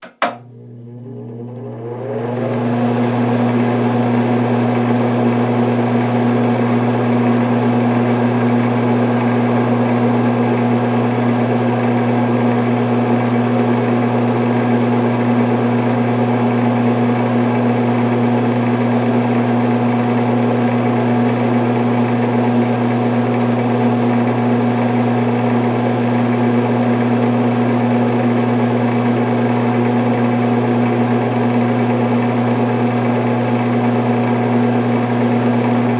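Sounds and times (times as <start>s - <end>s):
ventilation fan running: 35.0s - 35.9s.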